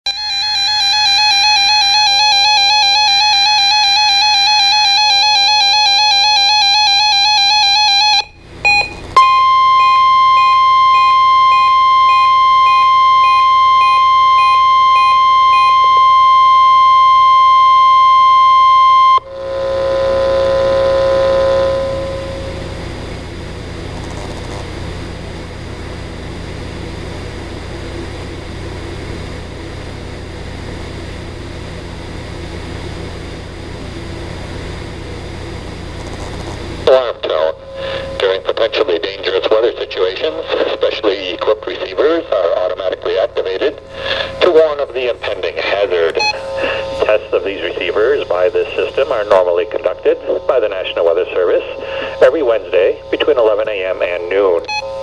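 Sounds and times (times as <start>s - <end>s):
steady warning alarm tone: 0.1s - 23.5s, 36.8s - 55.0s
low tone: 8.2s - 22.8s
faint beeps: 8.7s - 19.2s, 46.1s - 47.3s, 54.6s - 55.0s
radio static hiss: 19.3s - 22.3s, 36.3s - 54.7s.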